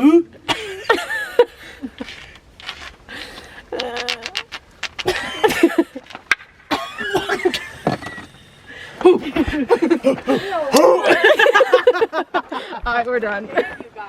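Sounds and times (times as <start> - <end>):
people laughing: 0.5 - 2.2, 5.0 - 6.2, 9.0 - 12.9
people grunting and hooting: 9.0 - 11.6.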